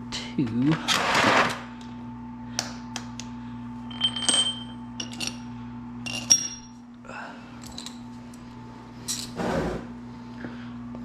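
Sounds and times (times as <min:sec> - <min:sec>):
steady low hum: 0:00.0 - 0:11.0
metal tools clinking: 0:03.9 - 0:06.8, 0:07.6 - 0:08.1, 0:09.0 - 0:09.4.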